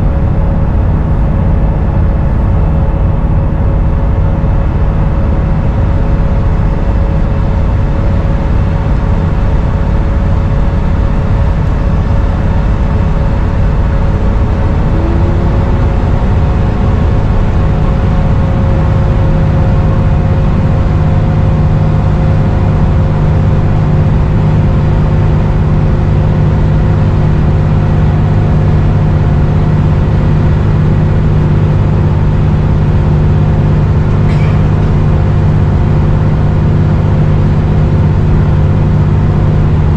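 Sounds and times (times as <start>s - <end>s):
bus engine drone: 0.0s - 39.9s
turbo whistle: 34.2s - 35.4s.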